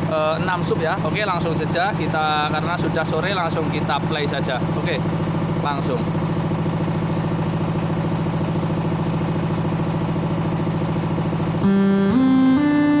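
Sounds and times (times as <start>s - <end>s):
engine idling: 0.0s - 12.9s
electronic tones rising in pitch: 11.6s - 13.0s.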